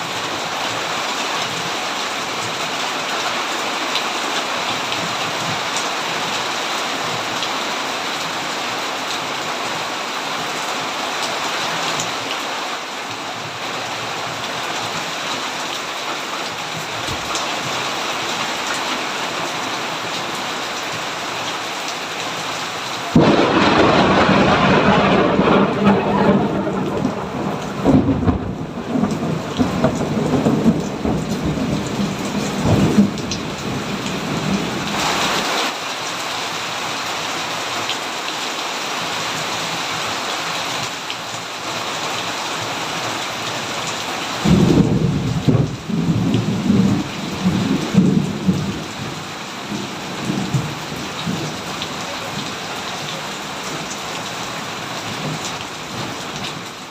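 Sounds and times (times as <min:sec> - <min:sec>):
steady rain: 0:00.0 - 0:56.9
rolling thunder: 0:23.1 - 0:34.9, 0:44.5 - 0:51.4.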